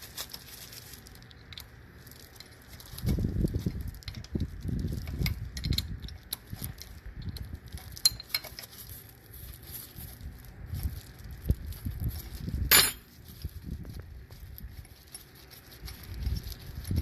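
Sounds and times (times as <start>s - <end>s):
low rumbling handling noise: 1.1s - 17.0s
metal tools clinking and rattling: 7.8s - 8.8s, 12.7s - 13.5s
sharp loud metal clink: 12.7s - 13.2s.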